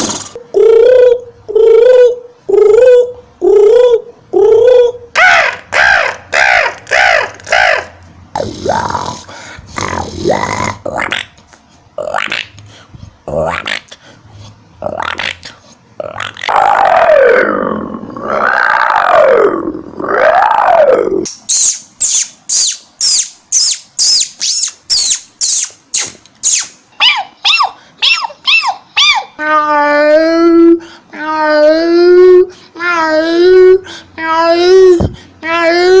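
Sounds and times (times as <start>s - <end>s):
person making mouth chirps: 0.0s - 5.0s, 6.7s - 16.6s, 21.2s - 26.8s
man imitating animal call: 0.0s - 11.4s, 12.0s - 12.7s, 13.3s - 14.0s, 14.8s - 21.3s.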